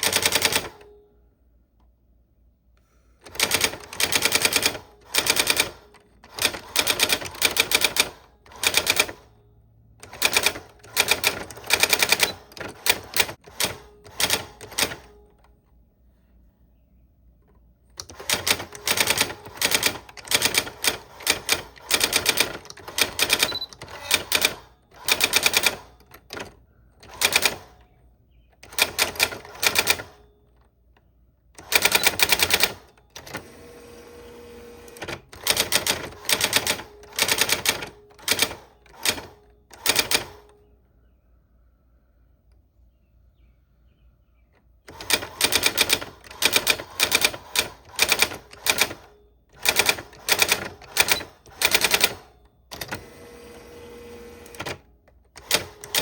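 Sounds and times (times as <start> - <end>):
typewriter rasping: 0.0 - 0.9, 3.2 - 9.3, 10.0 - 15.2, 18.0 - 27.8, 28.6 - 30.2, 31.6 - 40.5, 44.9 - 56.0
typewriter key strikes: 54.5 - 56.0.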